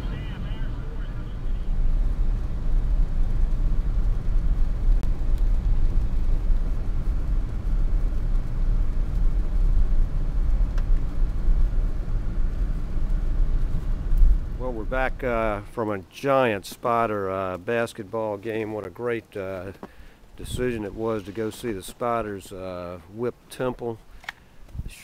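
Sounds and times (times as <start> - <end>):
car driving with engine rumble: 0.0 - 15.7.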